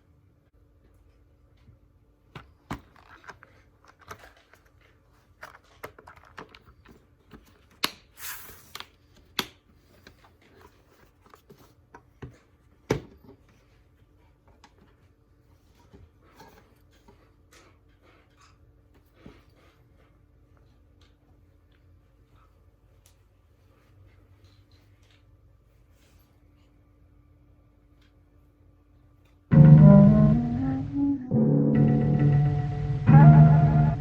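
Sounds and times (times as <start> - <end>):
steady low hum: 29.5 - 34.0.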